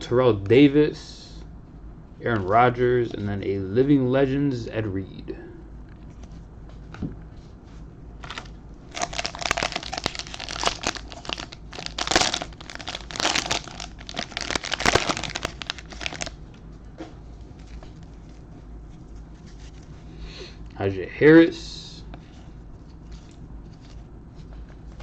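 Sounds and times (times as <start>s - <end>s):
plastic wrapper crinkling: 8.2s - 16.4s.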